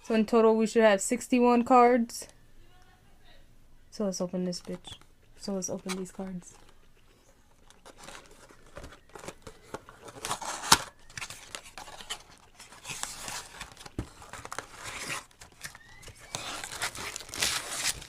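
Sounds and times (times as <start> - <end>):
packaging rustling and crinkling: 7.5 - 18.0.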